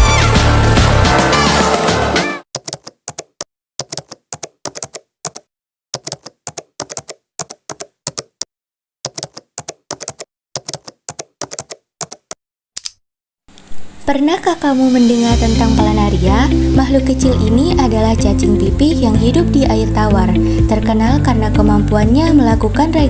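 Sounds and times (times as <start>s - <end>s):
typewriter key clicks: 2.6s - 8.4s, 9.1s - 13.0s.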